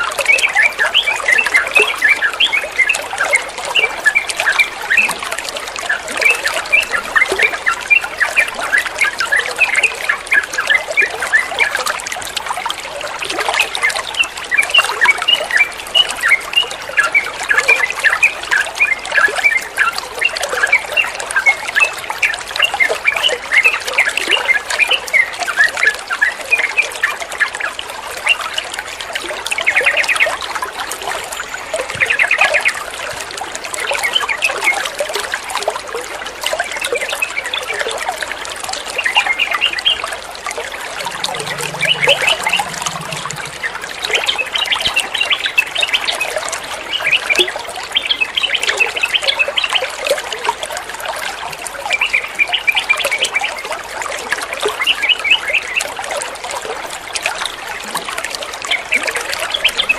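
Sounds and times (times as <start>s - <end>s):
water trickling: 0.0s - 59.9s
bird chirping: 41.0s - 44.9s.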